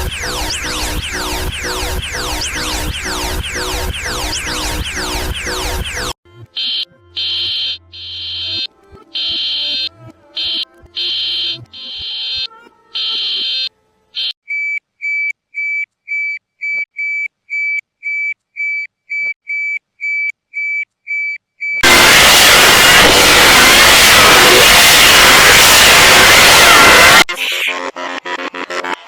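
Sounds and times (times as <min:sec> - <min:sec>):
harsh buzzing alarm tones: 0:00.0 - 0:14.7, 0:21.6 - 0:29.0
burst of static hiss: 0:21.8 - 0:28.8.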